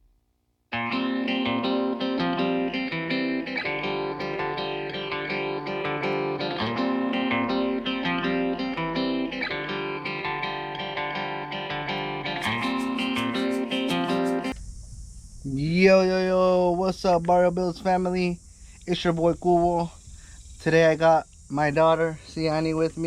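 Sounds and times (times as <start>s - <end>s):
guitar intro music: 0.7s - 14.6s.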